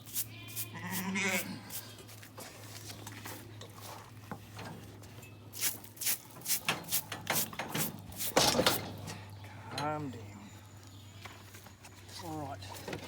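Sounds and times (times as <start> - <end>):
sheep bleating: 0.3 - 1.7.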